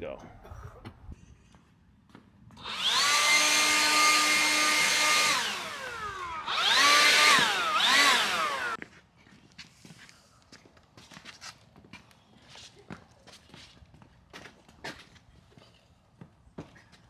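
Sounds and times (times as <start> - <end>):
electric power tool motor: 2.6 - 8.8.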